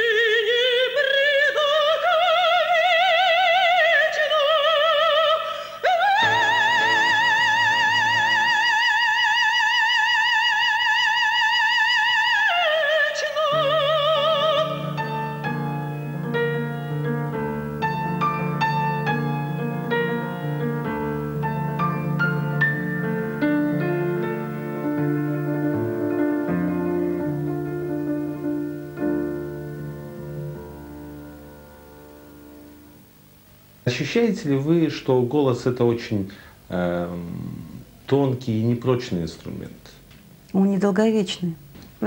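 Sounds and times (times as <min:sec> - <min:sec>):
woman singing opera: 0:00.0 - 0:17.0
piano music: 0:06.0 - 0:09.4, 0:13.5 - 0:33.1.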